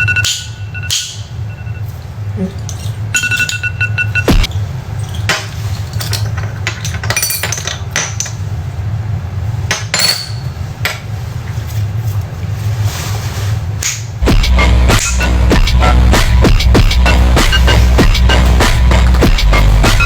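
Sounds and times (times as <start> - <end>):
steady low hum: 0.0 - 12.9, 13.5 - 20.0
glass ampoules clinking: 2.4 - 8.4, 9.7 - 11.0.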